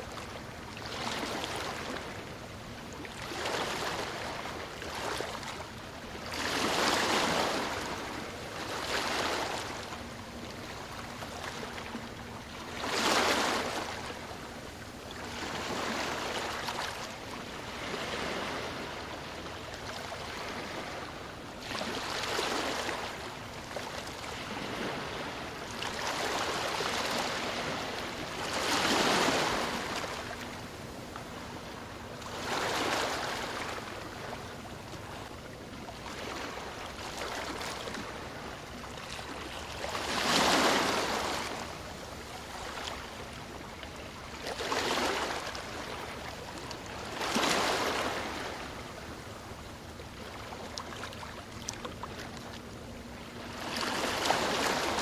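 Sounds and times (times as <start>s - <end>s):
ocean waves breaking on shore: 0.0s - 55.0s.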